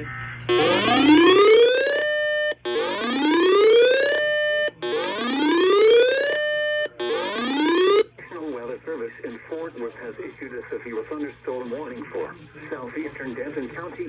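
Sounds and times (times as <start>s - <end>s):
rising whoop alert tone: 0.5s - 8.0s.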